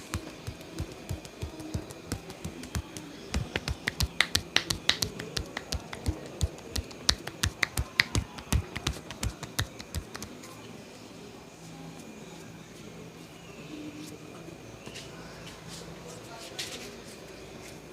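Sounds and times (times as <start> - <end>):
hand claps and slaps: 0.0 - 10.4.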